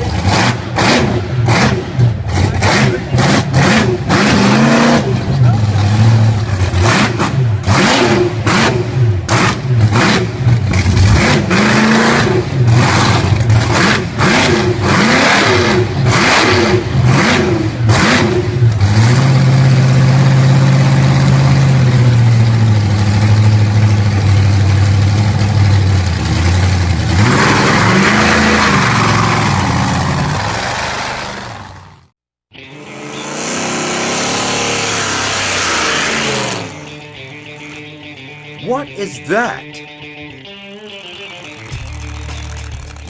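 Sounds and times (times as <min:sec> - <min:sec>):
engine revving: 0:00.0 - 0:22.1, 0:25.3 - 0:30.3, 0:32.8 - 0:37.7.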